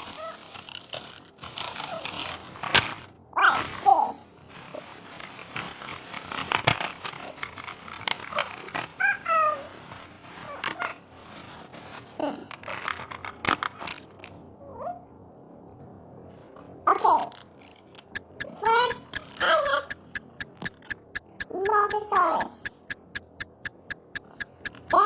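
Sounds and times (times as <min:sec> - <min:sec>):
plastic packaging crinkling: 0:04.4 - 0:14.2
high squeaky calls: 0:18.2 - 0:25.0.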